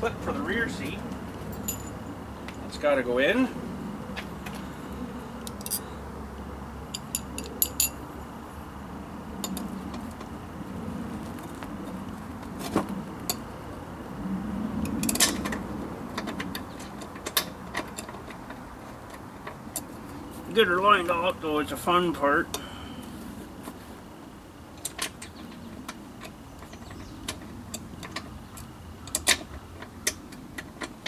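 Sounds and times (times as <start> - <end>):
light metallic clicks and clinks: 1.5 - 2.0, 5.4 - 5.9, 6.9 - 8.0, 9.4 - 9.7.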